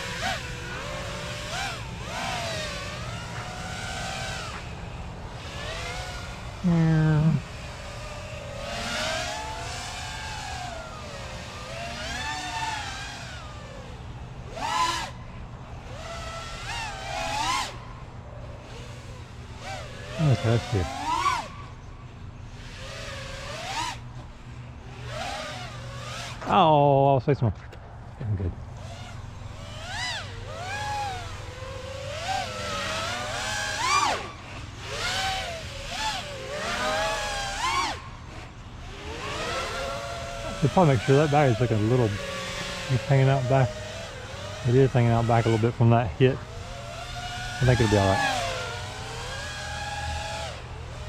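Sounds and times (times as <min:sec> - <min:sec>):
quadcopter motors whining: 0:00.0 - 0:51.0.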